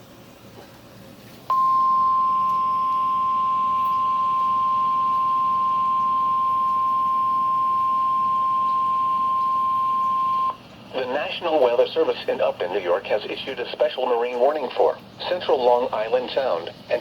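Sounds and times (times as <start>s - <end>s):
steady alarm beep tone: 1.5s - 10.6s
faint radio hiss: 10.9s - 17.0s.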